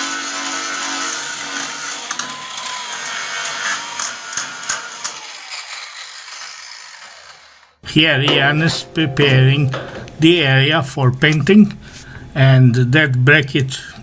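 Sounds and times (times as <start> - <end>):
small motor whirring: 0.0 - 7.8.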